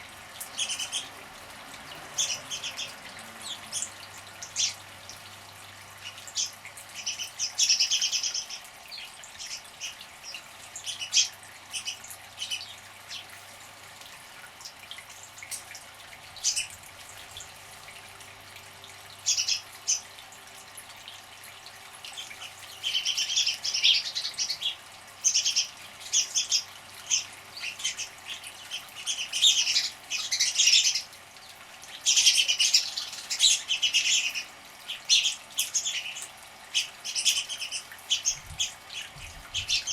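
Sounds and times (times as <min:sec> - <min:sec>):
birds chirping: 0:00.0 - 0:01.2, 0:01.8 - 0:05.3, 0:05.9 - 0:13.4, 0:19.1 - 0:20.2, 0:22.0 - 0:31.1, 0:31.9 - 0:39.9
birds splashing in water: 0:00.0 - 0:39.9.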